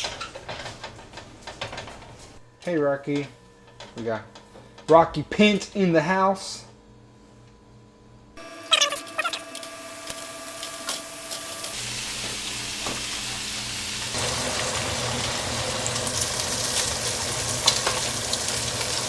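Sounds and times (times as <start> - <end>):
bacon sizzling in a pan: 9.0 - 19.0
grease crackling and popping: 14.1 - 19.0.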